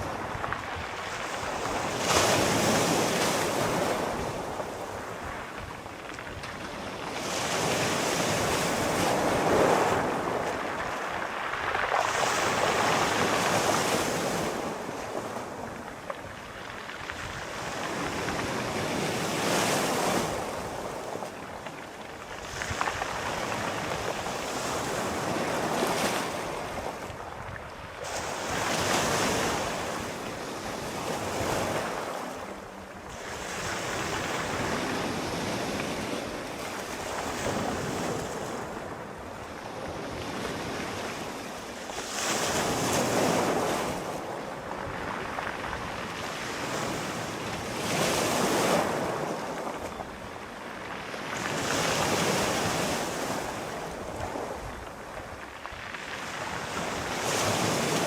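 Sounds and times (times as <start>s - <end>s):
sea waves washing up: 0.0s - 16.5s
wind: 0.0s - 58.0s.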